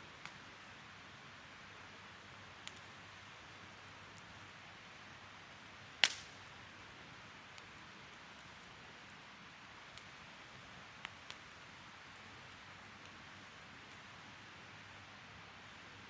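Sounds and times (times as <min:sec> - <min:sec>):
wood fire hissing: 0:00.0 - 0:16.0
fire popping and crackling: 0:02.6 - 0:03.0, 0:05.4 - 0:14.2.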